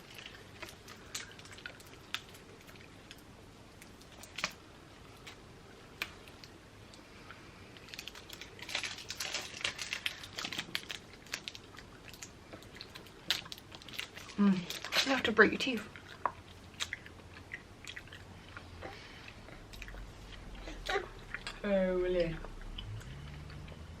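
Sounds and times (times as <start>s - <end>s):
sweets packaging crackling: 7.7s - 18.2s.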